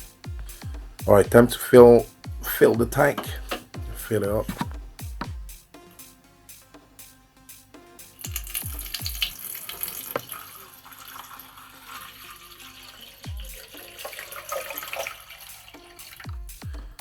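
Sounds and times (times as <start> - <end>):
tap water running into tank: 8.2 - 16.3.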